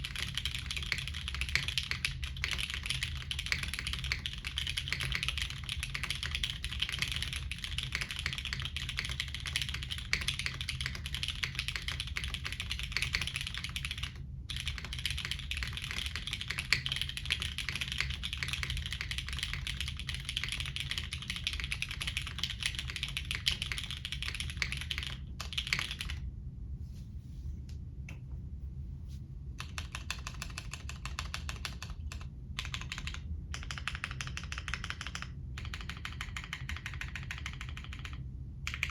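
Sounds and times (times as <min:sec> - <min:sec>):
mechanical keyboard typing: 0:00.0 - 0:26.2, 0:29.6 - 0:38.9.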